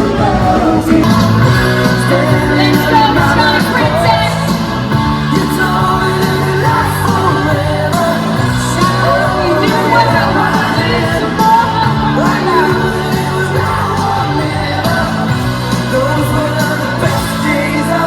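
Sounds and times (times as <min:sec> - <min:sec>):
pop-rock song with vocals: 0:00.0 - 0:18.0.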